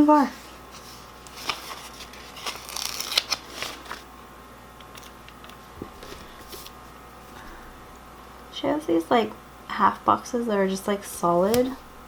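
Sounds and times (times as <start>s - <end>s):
paper rustling: 0.7s - 4.1s.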